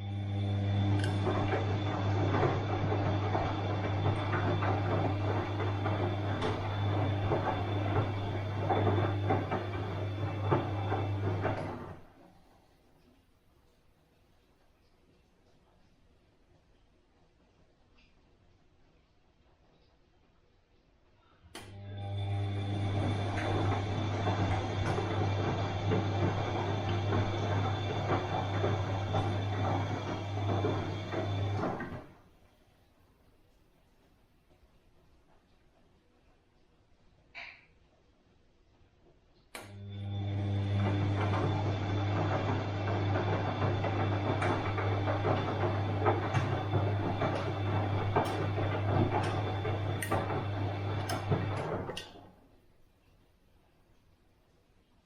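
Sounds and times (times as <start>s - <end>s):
washing machine running: 0.0s - 12.6s, 21.6s - 32.5s, 39.6s - 52.6s.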